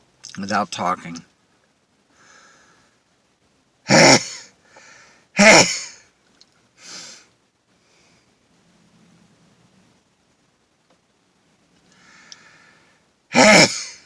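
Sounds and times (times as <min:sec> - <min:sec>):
man sneezing: 0:03.9 - 0:04.5, 0:05.4 - 0:06.0, 0:13.3 - 0:14.0
quick breath drawn: 0:06.8 - 0:08.3, 0:11.9 - 0:13.1.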